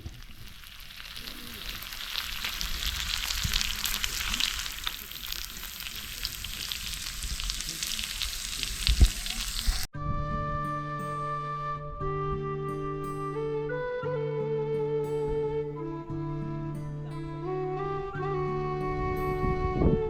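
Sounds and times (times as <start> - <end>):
meat sizzling on a griddle: 0.0 - 9.9.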